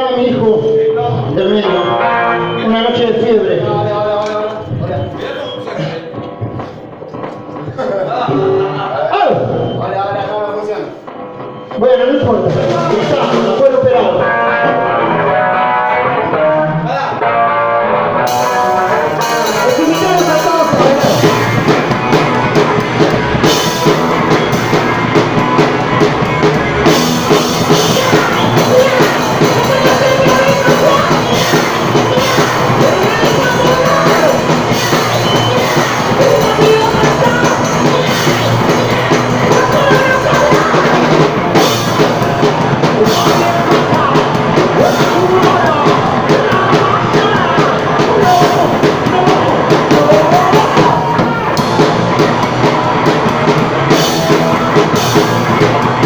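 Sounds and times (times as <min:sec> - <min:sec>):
drum kit: 0:00.0 - 0:10.3, 0:10.9 - 0:56.0
live rock band playing: 0:00.0 - 0:56.0
person singing: 0:26.9 - 0:52.3.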